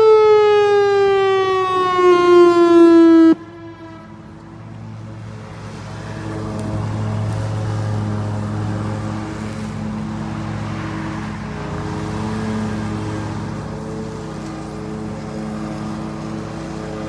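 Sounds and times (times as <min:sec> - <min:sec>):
outdoor warning siren steady tone: 0:00.0 - 0:05.1.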